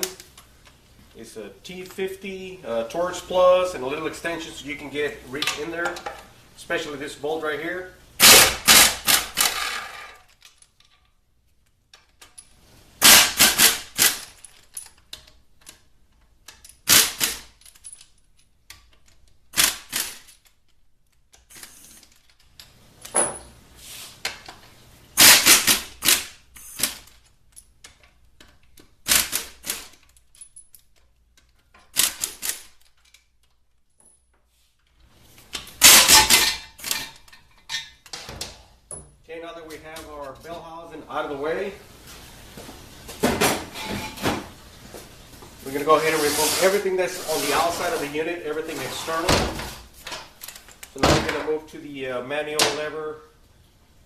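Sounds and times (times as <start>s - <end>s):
impact wrench rattling bursts: 8.2s - 10.4s, 13.0s - 15.0s, 16.7s - 17.6s, 19.5s - 20.4s, 25.2s - 27.2s, 31.8s - 32.8s, 35.6s - 37.4s.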